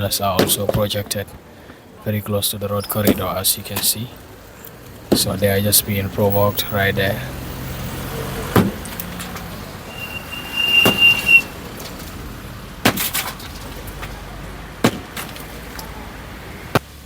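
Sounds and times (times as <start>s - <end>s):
roadside traffic: 0.0s - 17.0s
high steady squeal: 9.7s - 12.0s.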